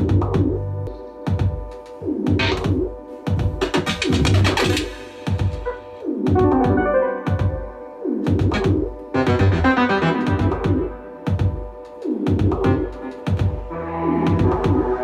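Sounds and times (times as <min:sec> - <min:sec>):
deep kick drum: 0:00.0 - 0:00.7, 0:01.3 - 0:09.6, 0:10.3 - 0:13.7, 0:14.3 - 0:15.0
synth chords: 0:00.0 - 0:15.0.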